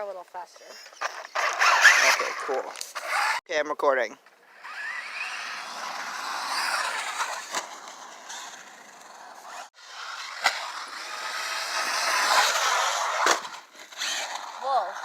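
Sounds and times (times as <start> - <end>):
rc car motor whine: 0.9 - 3.4, 4.4 - 15.0
tyres scraping on sand: 0.9 - 3.4, 4.6 - 15.0.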